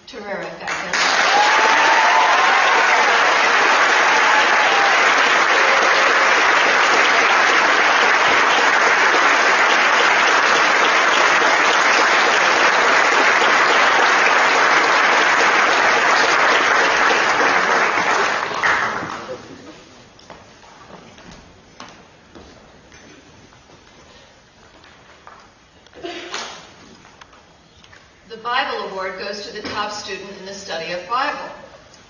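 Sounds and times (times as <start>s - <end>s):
audience applauding: 0.9s - 19.7s.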